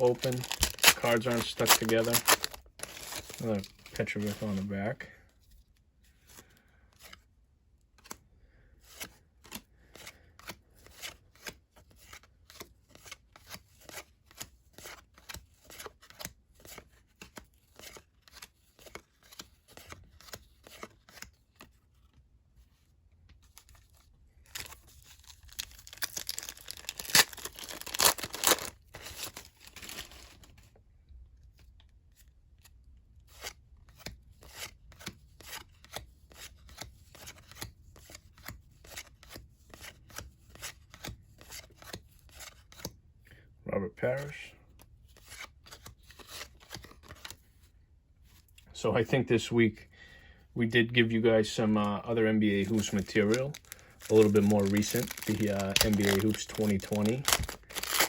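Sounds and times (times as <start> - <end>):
wrapper crinkling and tearing: 0.0 - 4.6, 24.4 - 30.4, 52.5 - 58.0.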